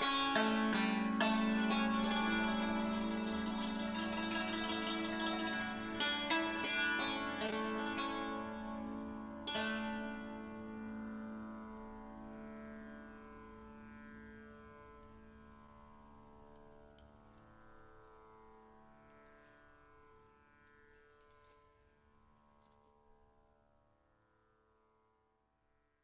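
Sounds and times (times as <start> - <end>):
santur strings ringing: 0.0 - 17.3.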